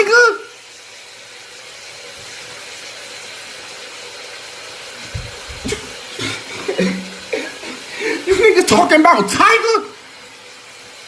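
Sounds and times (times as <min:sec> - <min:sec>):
background hiss: 0:05.0 - 0:11.0.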